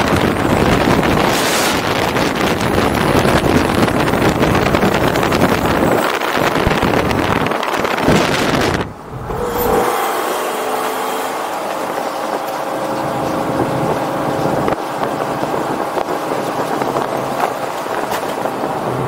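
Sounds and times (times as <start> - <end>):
road noise: 0.0 - 19.0
sports car engine droning: 0.0 - 19.0.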